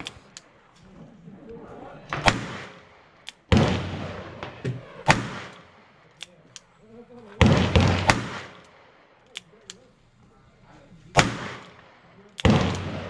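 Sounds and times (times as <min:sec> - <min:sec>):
faint sharp cracks: 0:00.0 - 0:03.6, 0:04.3 - 0:13.0
loud gunshots: 0:02.1 - 0:06.4, 0:07.4 - 0:09.1, 0:11.1 - 0:13.0.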